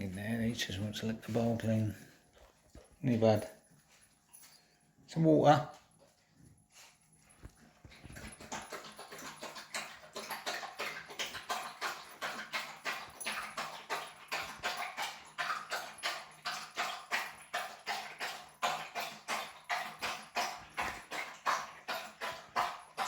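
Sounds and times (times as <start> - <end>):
dog lapping water: 5.8 - 23.0.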